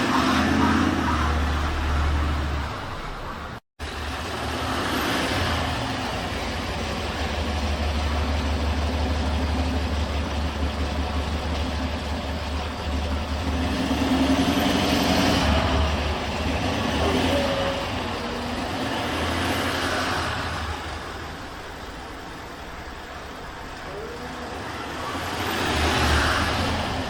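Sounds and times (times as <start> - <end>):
diesel engine running with misfire: 0.0 - 27.0.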